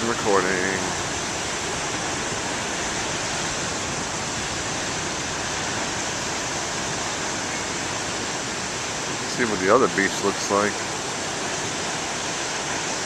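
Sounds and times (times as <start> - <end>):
waves breaking on shore: 0.0 - 13.0.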